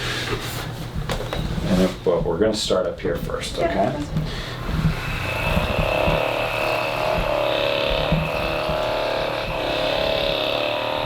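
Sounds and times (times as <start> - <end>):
massage gun motor whining: 4.0 - 11.0.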